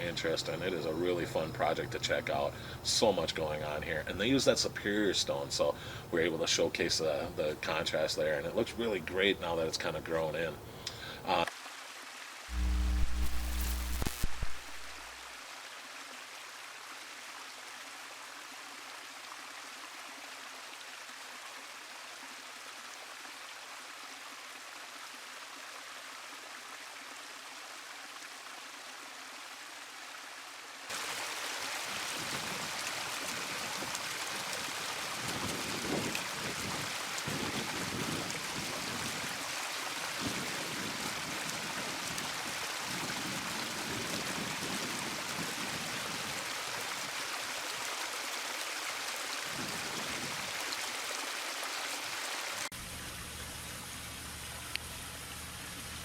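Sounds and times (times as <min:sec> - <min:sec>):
waterfall splashing over stone: 0:30.9 - 0:52.7.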